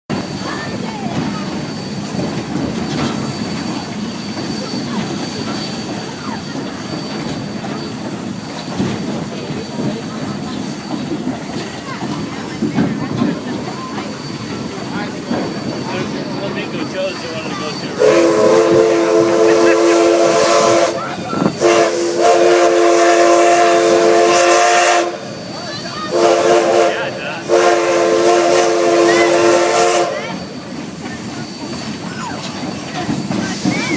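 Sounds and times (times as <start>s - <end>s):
train rumbling on rails: 0.1s - 33.9s
steady steam hiss: 0.2s - 33.9s
steam locomotive whistle blasts: 17.7s - 30.6s.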